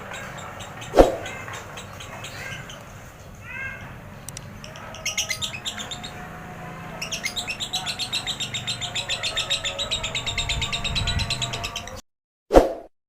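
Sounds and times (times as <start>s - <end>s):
lovebird chattering song: 4.6s - 6.2s, 7.0s - 12.0s.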